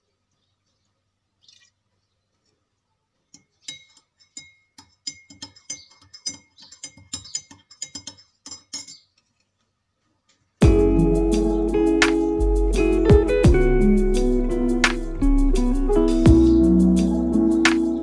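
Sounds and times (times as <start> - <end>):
kitchenware clinking and knocking: 3.6 - 9.1.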